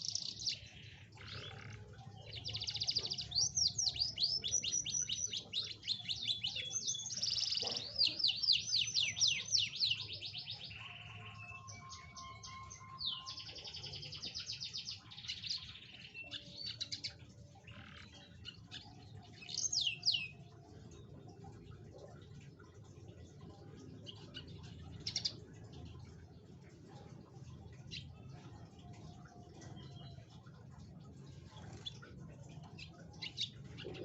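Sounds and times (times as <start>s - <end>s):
canary singing trills: 0.0s - 34.0s.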